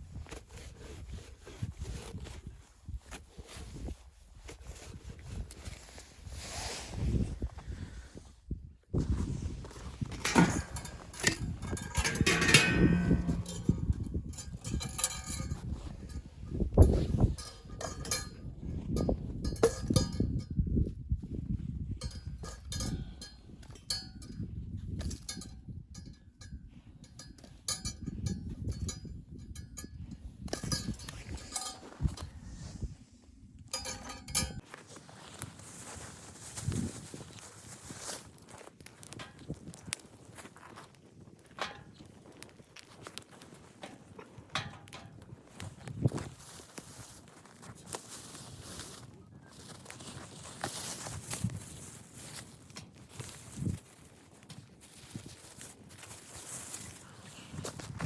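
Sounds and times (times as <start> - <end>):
objects knocking and clinking: 10.1 - 16.1, 33.8 - 34.6
metallic clinks: 10.2 - 16.3, 25.1 - 32.2, 33.8 - 34.6.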